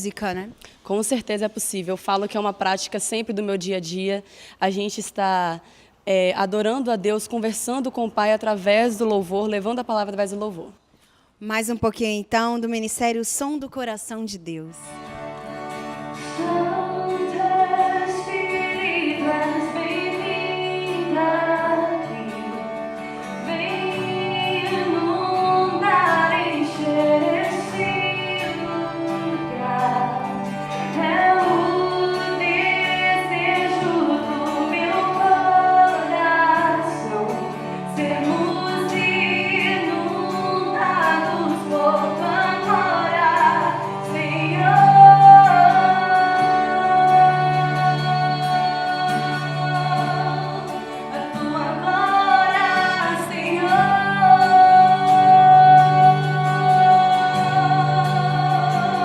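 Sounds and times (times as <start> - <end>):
woman singing: 16.1 - 59.0.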